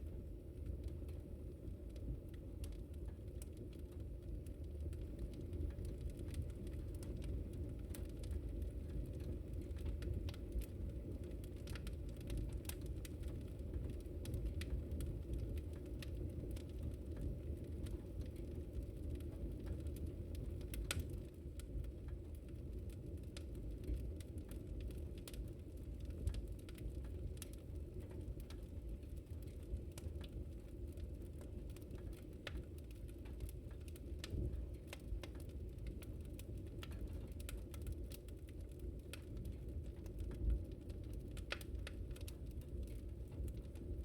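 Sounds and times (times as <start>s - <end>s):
fire crackling and popping: 0.0s - 44.0s
wood fire rumbling: 0.0s - 44.0s.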